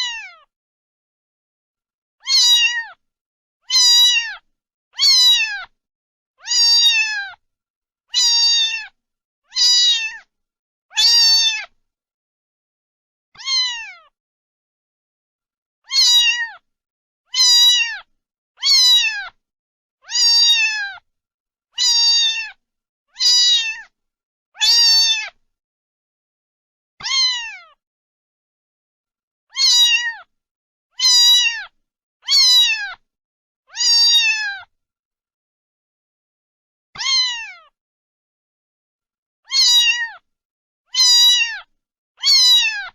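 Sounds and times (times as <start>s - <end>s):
cat meowing: 0.0s - 0.5s, 2.2s - 3.0s, 3.6s - 5.8s, 6.4s - 7.4s, 8.1s - 10.3s, 10.9s - 11.8s, 13.4s - 14.2s, 15.8s - 16.6s, 17.3s - 19.4s, 20.0s - 21.0s, 21.8s - 23.9s, 24.6s - 25.4s, 27.0s - 27.8s, 29.5s - 30.3s, 31.0s - 33.0s, 33.7s - 34.7s, 37.0s - 37.8s, 39.5s - 40.2s, 40.9s - 42.9s.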